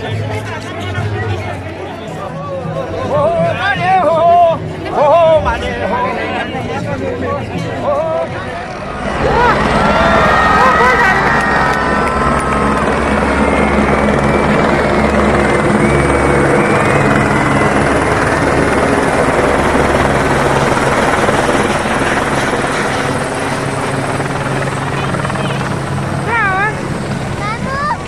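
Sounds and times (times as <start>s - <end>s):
aircraft roaring: 6.2s - 28.0s.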